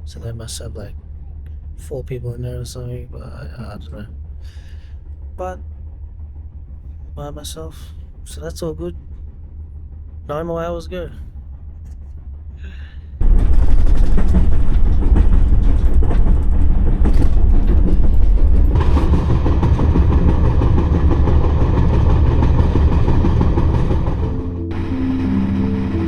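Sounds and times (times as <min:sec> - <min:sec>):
train rumbling: 0:00.0 - 0:26.0
wheels clicking over rails: 0:13.2 - 0:26.0.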